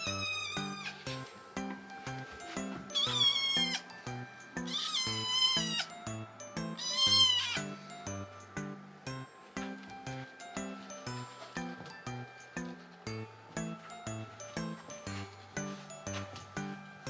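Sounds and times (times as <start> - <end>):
kitten meowing: 0.0 - 1.0, 3.0 - 3.9, 4.6 - 6.0, 6.7 - 7.7
background music with beat: 0.0 - 17.0.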